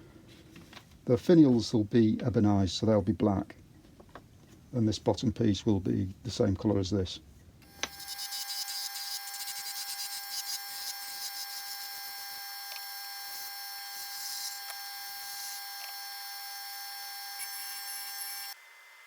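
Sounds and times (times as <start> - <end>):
small electric motor whining: 7.6 - 19.0.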